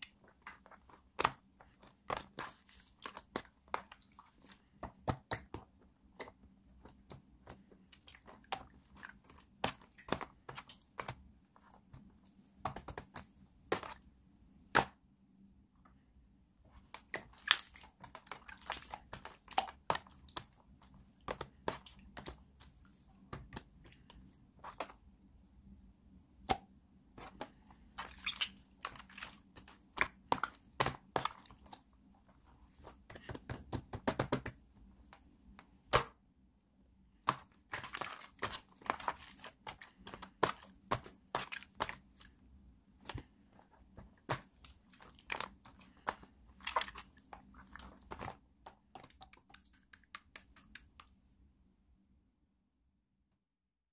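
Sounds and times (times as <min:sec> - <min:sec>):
slime squished by hand: 0:37.2 - 0:42.3, 0:44.2 - 0:51.1.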